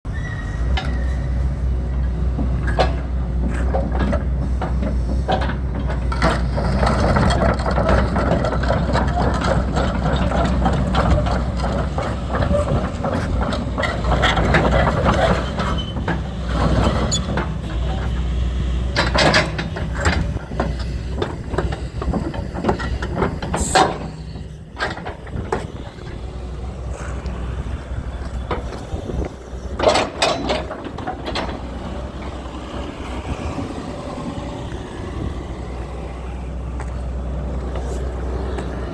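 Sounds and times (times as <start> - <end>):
excavator diesel engine running: 0.1 - 38.9
machine clanks and knocks: 2.3 - 26.2, 28.2 - 32.8.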